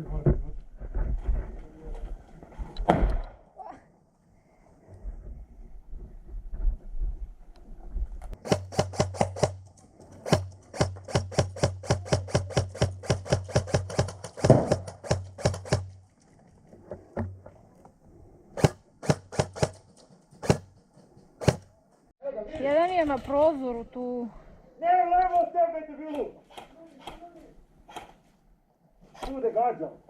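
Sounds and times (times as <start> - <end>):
loud thump: 2.8 - 3.3
airsoft gun rapid firing: 8.4 - 9.6, 10.2 - 15.9, 18.6 - 19.8.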